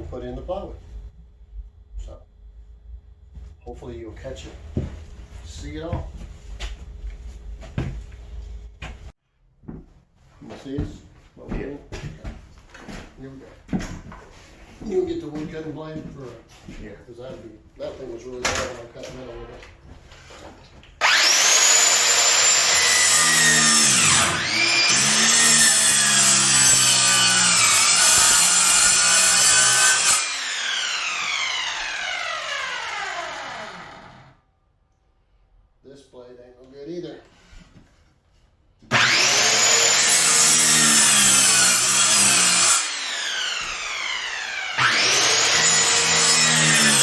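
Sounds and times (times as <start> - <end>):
electric power saw cutting wood: 21.0 - 34.4, 38.9 - 47.0.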